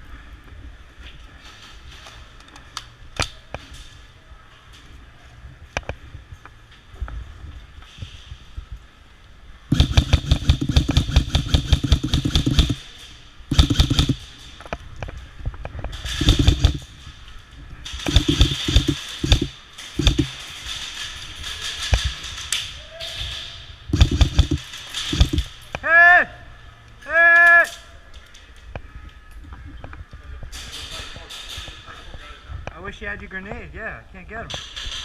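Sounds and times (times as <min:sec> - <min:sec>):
airsoft guns firing bursts: 0:09.7 - 0:14.4, 0:16.1 - 0:17.0, 0:18.0 - 0:20.5, 0:23.9 - 0:25.6.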